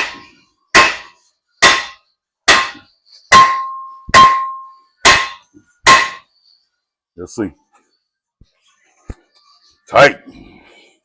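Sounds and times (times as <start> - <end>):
hammer striking metal hub: 0.8 - 6.2.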